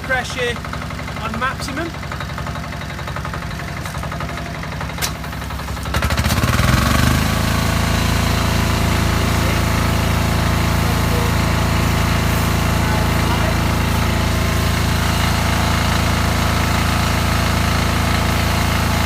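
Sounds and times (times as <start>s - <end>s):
pressure washer engine running: 0.0s - 19.0s
water spray hissing: 10.3s - 16.0s.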